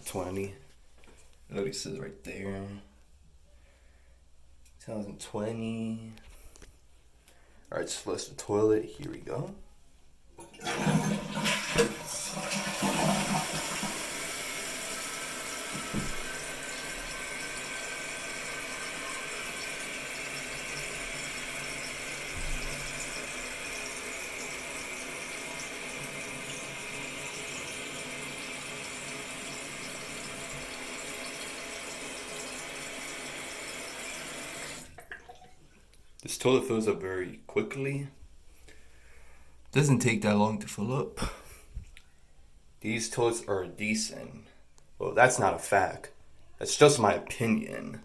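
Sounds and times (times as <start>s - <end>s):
toilet flushing: 10.4s - 35.6s.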